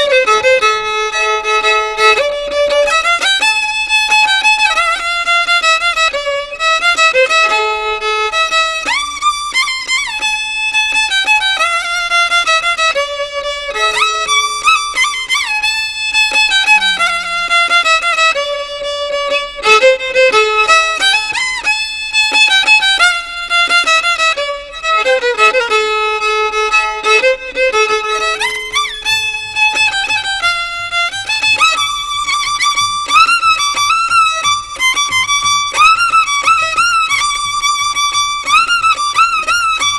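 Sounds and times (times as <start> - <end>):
violin playing lively melody: 0.0 - 39.9.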